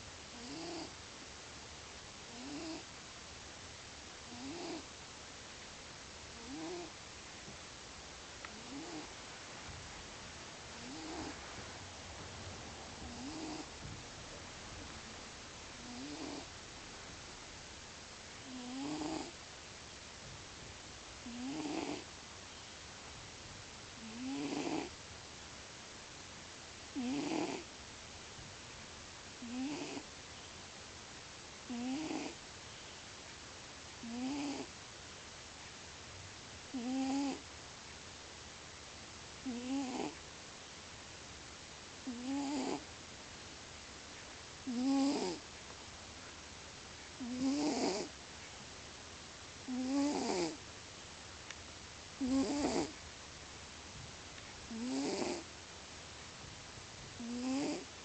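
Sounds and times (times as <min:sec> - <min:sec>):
cat snoring: 0:00.3 - 0:01.0, 0:02.3 - 0:02.9, 0:04.2 - 0:04.9, 0:06.3 - 0:07.0, 0:08.5 - 0:09.1, 0:10.7 - 0:11.4, 0:13.0 - 0:13.9, 0:15.8 - 0:16.5, 0:18.4 - 0:19.4, 0:21.2 - 0:22.1, 0:24.0 - 0:24.9, 0:26.9 - 0:27.7, 0:29.4 - 0:30.1, 0:31.7 - 0:32.4, 0:34.0 - 0:34.7, 0:36.7 - 0:37.4, 0:39.4 - 0:40.2, 0:42.0 - 0:42.9, 0:44.6 - 0:45.4, 0:47.2 - 0:48.2, 0:49.6 - 0:50.6, 0:52.2 - 0:53.0, 0:54.7 - 0:55.5, 0:57.2 - 0:57.9.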